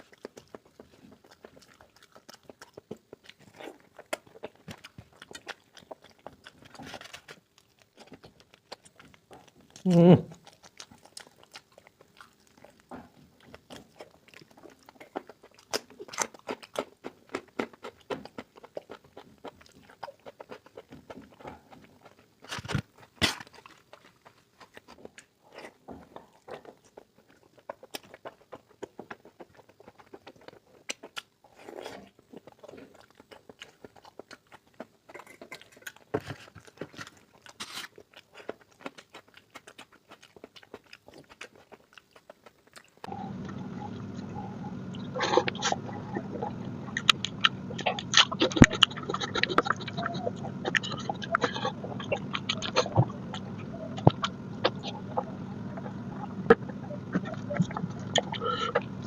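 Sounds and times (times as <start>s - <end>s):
wet chewing and crunching: 0.0s - 59.0s.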